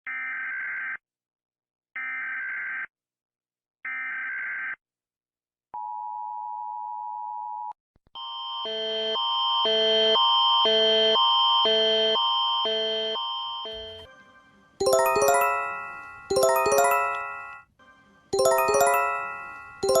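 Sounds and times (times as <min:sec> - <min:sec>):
alternating alert tone: 0:14.8 - 0:17.6, 0:18.4 - 0:20.0.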